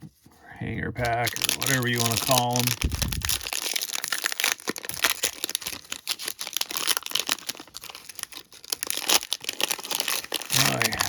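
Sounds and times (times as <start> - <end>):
plastic wrapper crinkling: 1.0 - 11.0.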